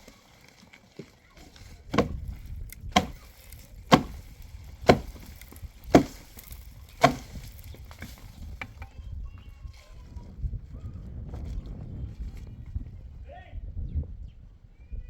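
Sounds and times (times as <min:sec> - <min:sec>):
heavy blows into wood: 0:01.4 - 0:08.8.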